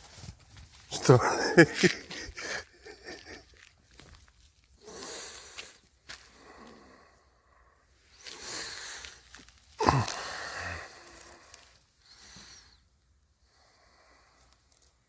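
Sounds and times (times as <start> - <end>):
rustling: 0.0 - 4.8
breathy huffs: 0.9 - 3.6, 4.8 - 12.8.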